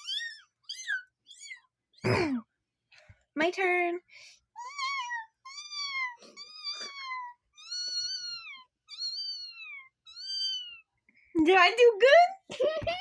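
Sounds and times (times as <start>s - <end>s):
girl imitating kitten meows: 4.6s - 10.7s.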